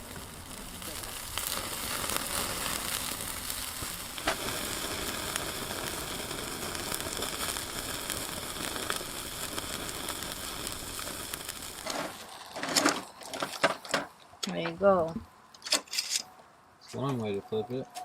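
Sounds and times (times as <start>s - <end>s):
fish sizzling and crackling: 0.0s - 14.1s.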